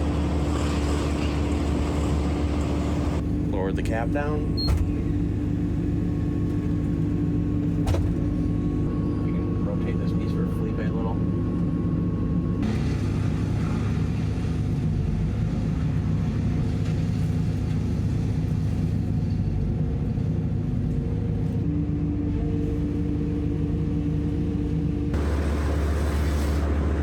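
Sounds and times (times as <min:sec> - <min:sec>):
diesel engine under load: 0:00.0 - 0:27.0.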